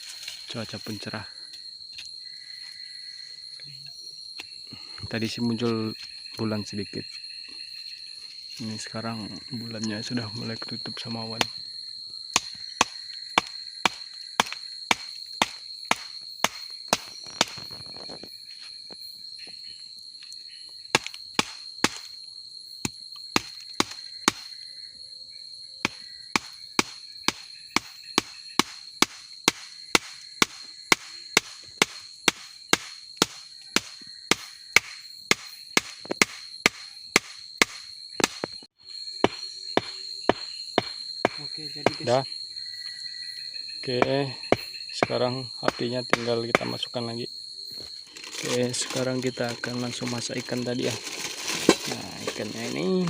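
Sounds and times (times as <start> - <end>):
high-pitched insect drone: 0.0 - 53.0
sharp knocks: 25.8 - 38.6, 39.2 - 42.1, 44.0 - 46.8.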